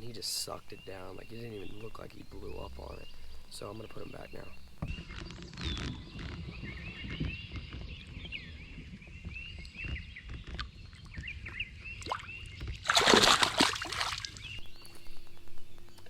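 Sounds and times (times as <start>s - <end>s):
faint steady hum: 0.0s - 5.0s, 12.9s - 16.0s
fish splashing into water: 12.0s - 14.6s.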